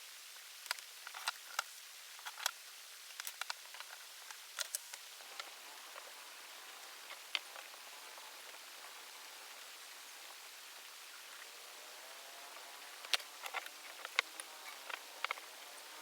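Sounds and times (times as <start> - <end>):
steady hiss: 0.0 - 16.0
light clicks and taps: 12.9 - 16.0.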